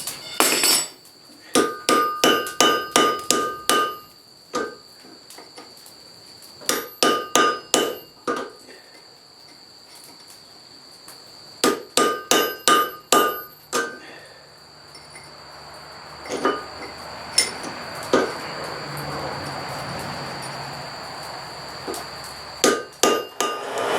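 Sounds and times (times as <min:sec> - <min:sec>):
hammer striking iron on anvil: 0:00.2 - 0:01.0, 0:01.6 - 0:04.7, 0:06.7 - 0:08.1, 0:11.6 - 0:13.9, 0:22.6 - 0:23.9.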